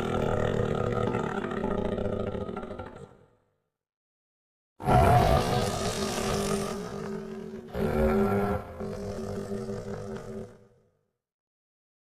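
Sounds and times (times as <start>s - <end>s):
monster roar: 4.8s - 10.6s.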